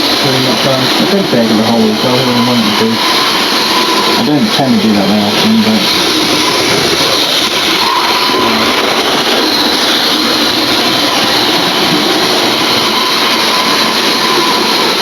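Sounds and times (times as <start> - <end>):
faint steady whine: 0.0 - 15.0
model train running on track: 0.0 - 15.0.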